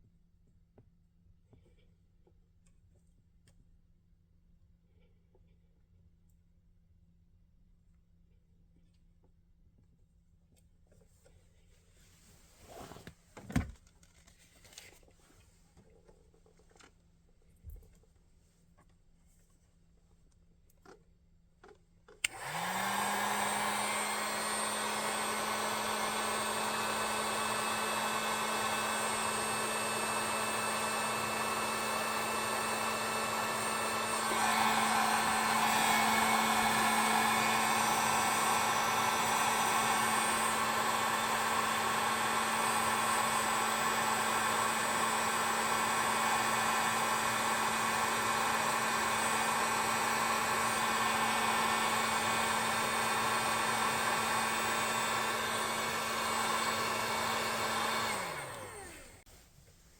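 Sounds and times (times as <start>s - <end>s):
heat gun fan humming: 22.2s - 59.3s.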